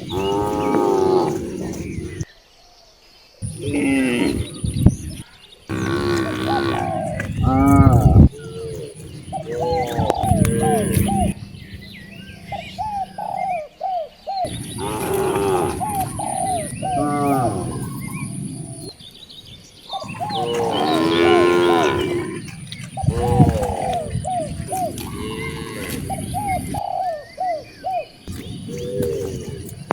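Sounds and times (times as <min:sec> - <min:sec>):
cattle mooing and bellowing: 0:00.0 - 0:02.2, 0:03.4 - 0:08.6, 0:14.5 - 0:17.9, 0:20.1 - 0:26.7.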